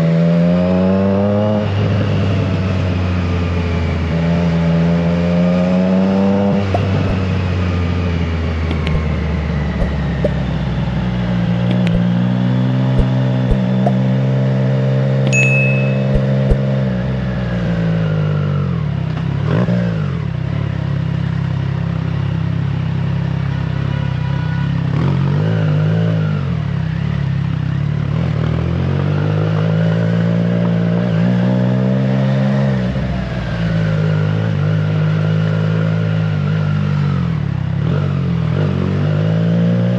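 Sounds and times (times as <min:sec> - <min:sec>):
motorcycle engine running: 0:06.2 - 0:23.9
sharp clicks: 0:08.7 - 0:09.1, 0:11.7 - 0:12.1.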